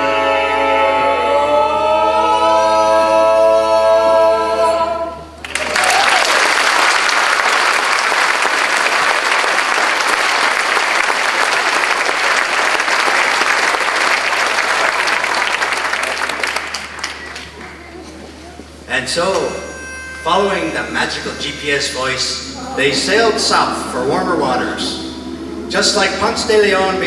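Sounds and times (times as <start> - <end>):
male chorus singing a chord: 0.0 - 5.4, 19.0 - 27.0
audience applause: 5.4 - 24.3.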